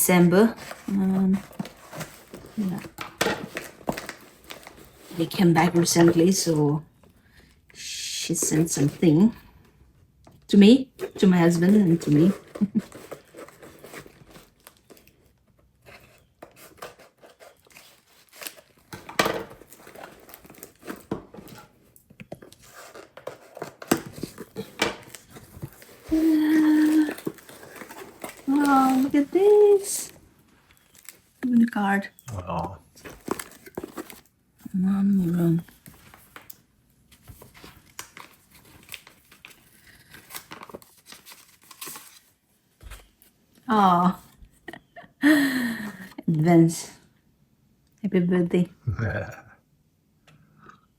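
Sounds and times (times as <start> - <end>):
paper and packaging crinkling: 0.1 - 6.6, 10.8 - 31.9, 32.9 - 43.0
packaging tearing and crinkling: 16.5 - 21.6, 22.5 - 29.9.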